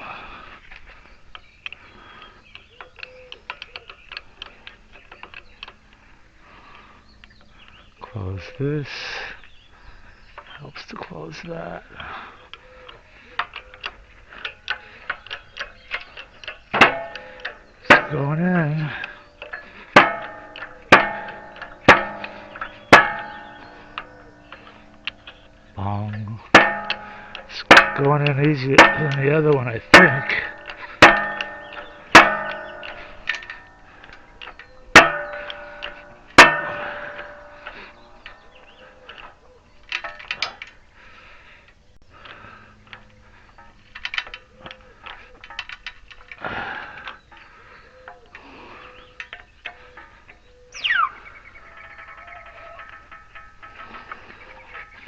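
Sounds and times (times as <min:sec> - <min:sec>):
hammer clanging on metal: 0:13.4 - 0:40.7.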